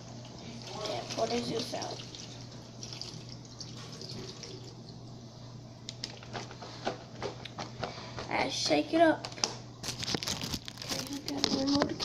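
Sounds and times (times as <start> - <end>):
water splashing into sink: 0.0 - 4.9.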